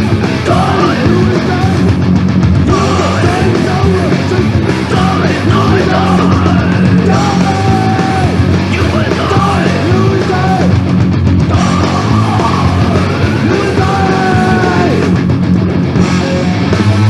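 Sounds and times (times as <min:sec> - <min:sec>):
punk rock band playing: 0:00.0 - 0:17.0
person yelling vocals: 0:00.4 - 0:01.8, 0:02.7 - 0:10.8, 0:11.5 - 0:15.1.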